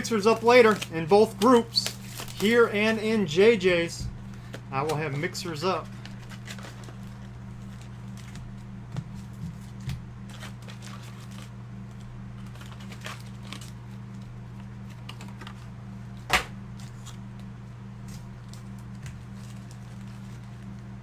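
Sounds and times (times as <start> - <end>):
cards and packaging clicking: 0.0 - 3.2, 4.3 - 8.4, 9.6 - 17.2
steady low hum: 0.0 - 21.0.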